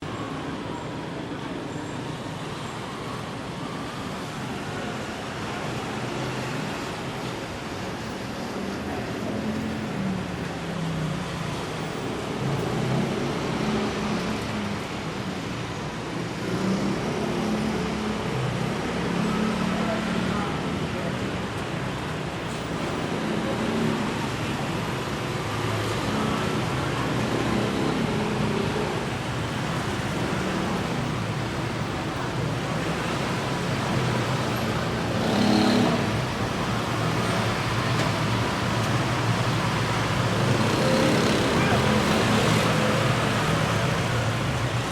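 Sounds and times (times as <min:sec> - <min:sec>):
road traffic hum: 0:00.0 - 0:44.9
vehicle passing by: 0:27.5 - 0:44.9.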